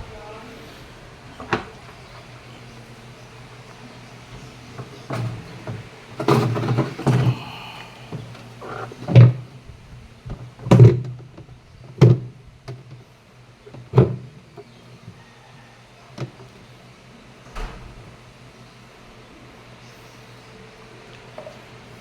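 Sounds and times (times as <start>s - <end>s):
washing machine thunks and knocks: 10.4s - 11.2s, 12.0s - 12.4s, 17.5s - 18.1s.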